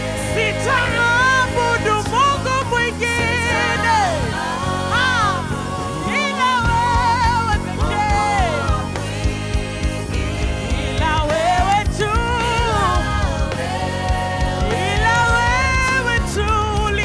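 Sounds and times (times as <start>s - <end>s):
band playing steady chords: 0.0s - 17.0s.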